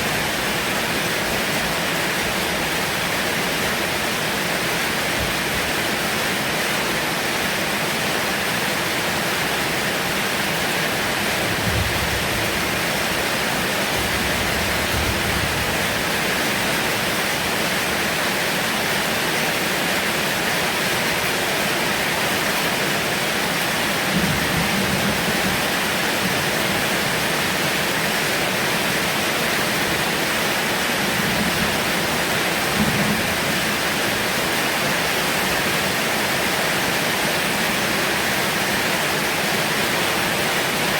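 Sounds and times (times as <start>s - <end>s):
heavy rain falling: 0.0s - 40.9s
low thuds: 11.4s - 16.3s.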